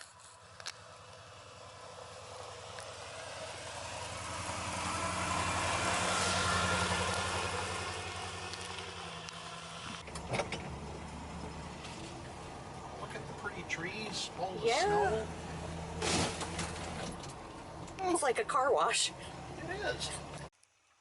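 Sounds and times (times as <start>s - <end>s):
rush of snow and tyres: 0.0s - 12.7s
truck engine running: 0.0s - 20.5s.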